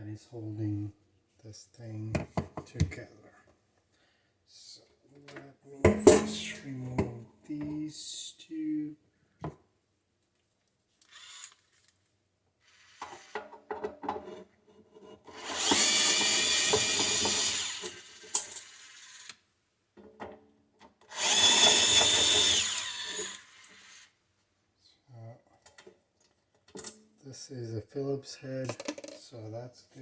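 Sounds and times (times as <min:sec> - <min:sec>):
cordless power driver running: 0:15.3 - 0:19.2, 0:21.1 - 0:24.0.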